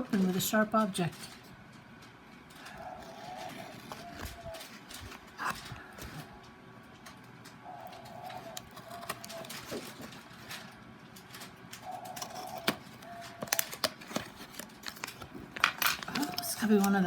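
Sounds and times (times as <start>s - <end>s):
packet crinkling being opened: 2.4s - 6.3s, 8.0s - 17.0s.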